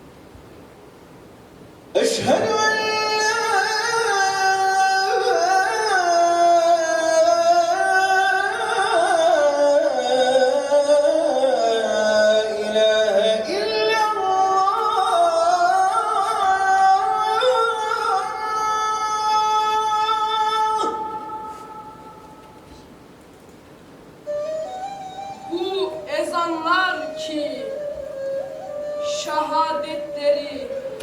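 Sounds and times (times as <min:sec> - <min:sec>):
call to prayer chanted by one voice: 0:02.0 - 0:22.7, 0:29.1 - 0:31.0.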